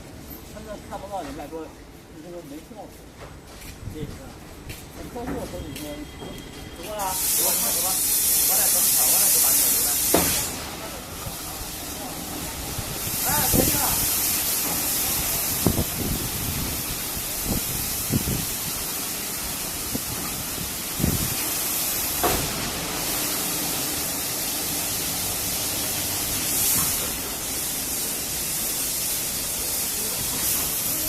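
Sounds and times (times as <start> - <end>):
car wash jets spraying: 7.0 - 31.0.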